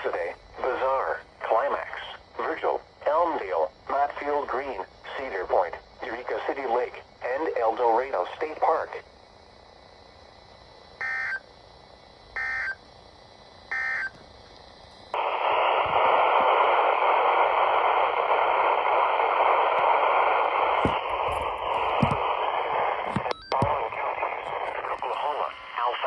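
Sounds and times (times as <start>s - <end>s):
loud radio static: 0.0s - 9.1s, 15.1s - 26.0s
emergency alert data tones: 11.0s - 11.5s, 12.4s - 12.8s, 13.7s - 14.2s, 20.8s - 25.8s.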